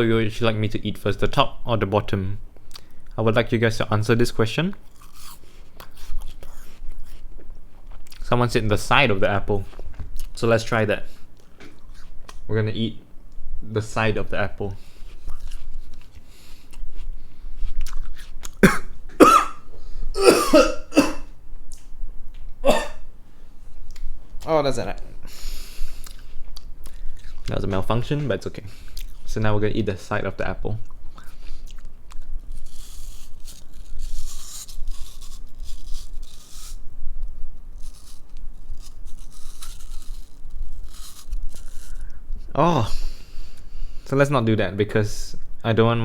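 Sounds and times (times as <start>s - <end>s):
teeth crunching into apple: 4.7s - 8.3s, 11.4s - 12.5s, 14.9s - 18.9s, 25.9s - 27.8s, 30.8s - 42.2s
person coughing: 18.6s - 19.6s, 20.2s - 21.3s, 22.6s - 23.0s.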